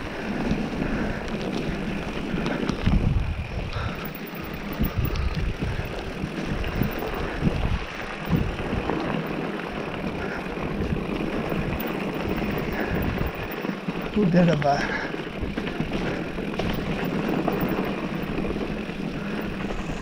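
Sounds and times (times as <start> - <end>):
bike tyres rumbling on dirt: 0.0 - 20.0
wind buffeting microphone: 0.0 - 20.0
bike knocks and rattles: 3.8 - 19.6.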